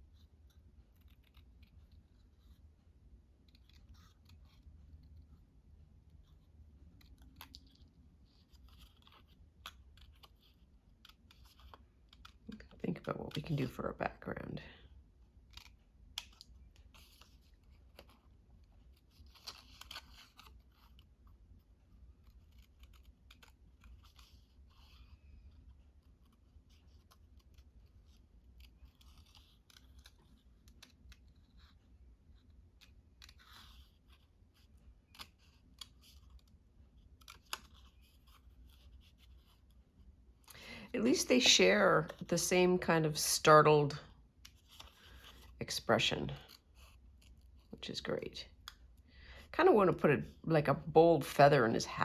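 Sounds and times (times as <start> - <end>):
scissors cutting paper: 6.8 - 13.7, 22.2 - 25.2.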